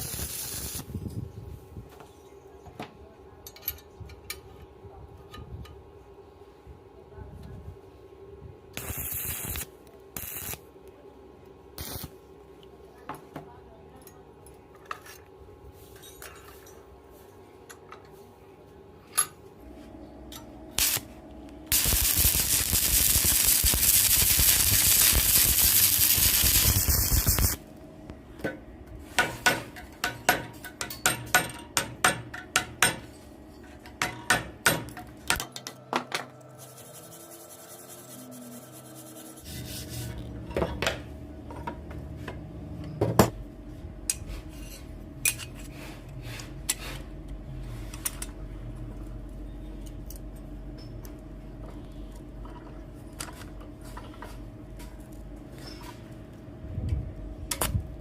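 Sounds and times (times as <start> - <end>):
loud harsh metalworking noise: 20.3 - 27.6.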